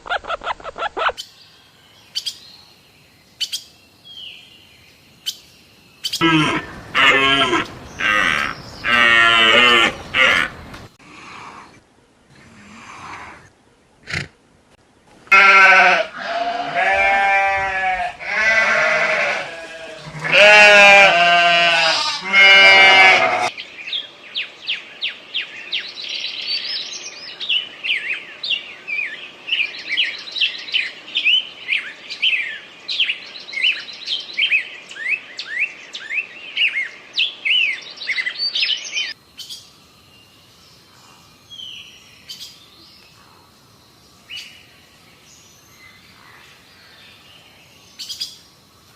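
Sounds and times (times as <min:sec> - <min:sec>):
bird chirping rapidly: 0:00.0 - 0:01.4
sheep bleating: 0:06.2 - 0:10.6, 0:15.3 - 0:23.5.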